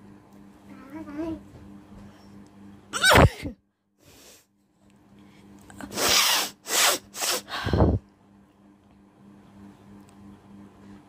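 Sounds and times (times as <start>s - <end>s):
faint steady hum: 0.0s - 11.0s
woman sneezing: 3.0s - 3.5s, 5.9s - 7.5s.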